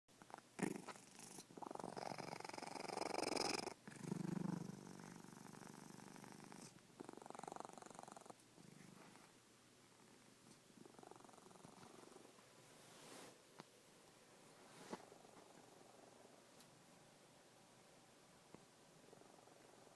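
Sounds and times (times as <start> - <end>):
cat snoring: 0.2 - 9.2, 10.8 - 12.3.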